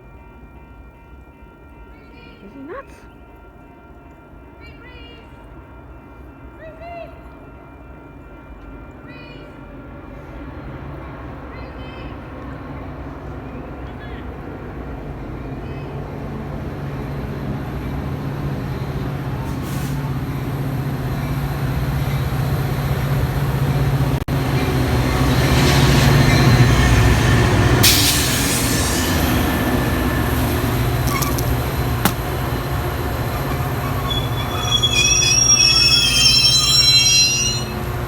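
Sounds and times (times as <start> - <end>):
train rumbling: 9.8 - 38.0
wheel squeal: 31.0 - 32.2, 33.2 - 37.9.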